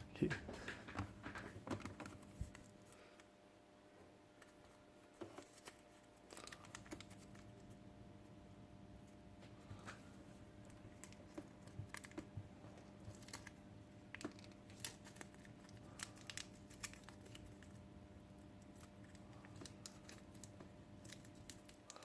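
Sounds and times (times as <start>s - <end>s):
faint steady hum: 0.0s - 22.0s
plastic parts clicking and tapping: 0.2s - 2.6s.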